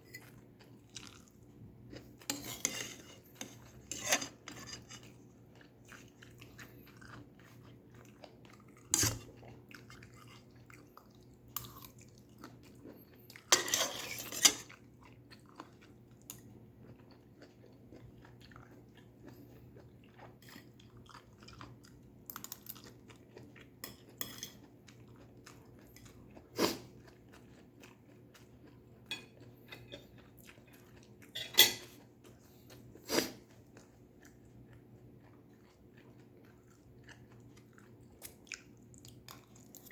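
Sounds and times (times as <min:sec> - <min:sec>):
chewing and crunching: 0:00.0 - 0:39.9
utensils clinking on a dish: 0:13.5 - 0:14.7, 0:31.4 - 0:31.9.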